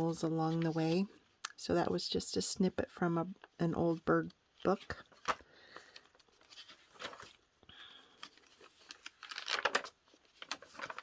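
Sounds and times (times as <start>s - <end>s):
paper pages rustling: 0.0s - 1.3s, 3.9s - 11.0s.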